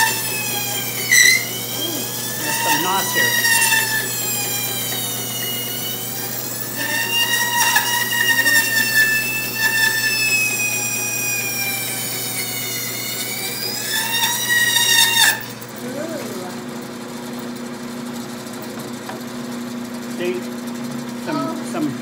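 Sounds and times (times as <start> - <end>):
bandsaw cutting wood: 0.0 - 15.6.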